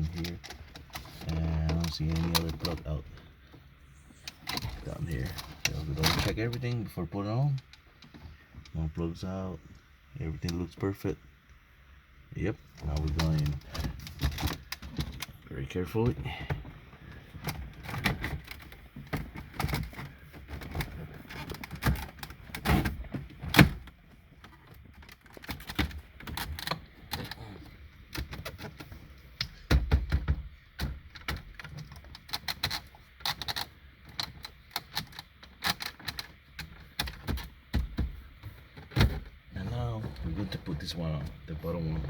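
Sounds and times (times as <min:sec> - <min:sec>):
plastic clicks and knocks: 0:28.1 - 0:39.4.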